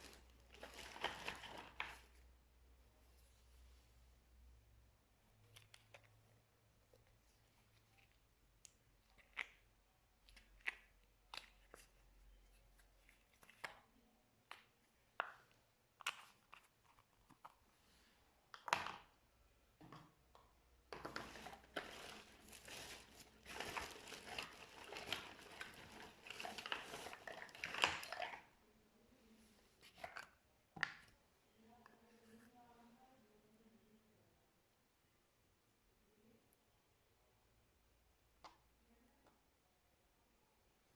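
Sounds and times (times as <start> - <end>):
wet slime crackling and squishing: 21.1 - 28.6.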